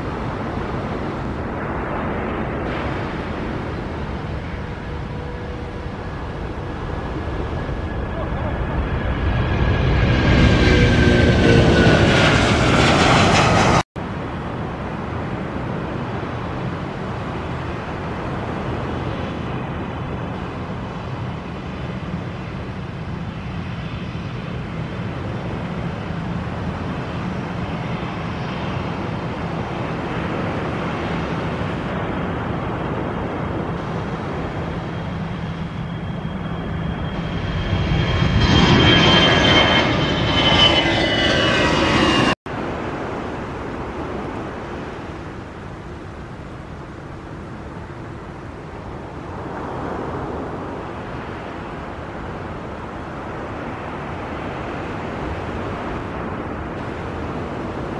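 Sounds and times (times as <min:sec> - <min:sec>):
jet engines roaring: 0:00.0 - 0:57.9.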